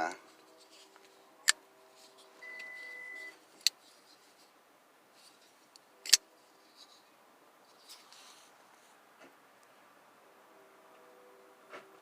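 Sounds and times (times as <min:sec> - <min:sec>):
steady electronic beep: 0:02.4 - 0:03.3.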